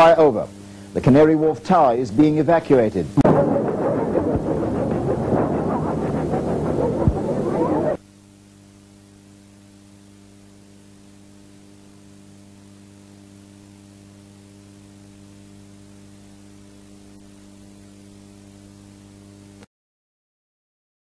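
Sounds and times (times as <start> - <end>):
electrical mains hum: 0.0 - 19.7.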